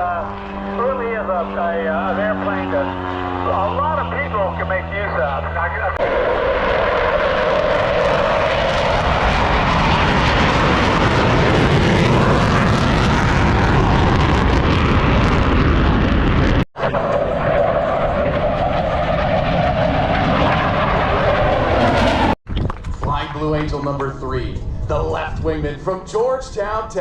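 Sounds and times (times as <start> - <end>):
airplane propeller engine drone: 0.0 - 27.0.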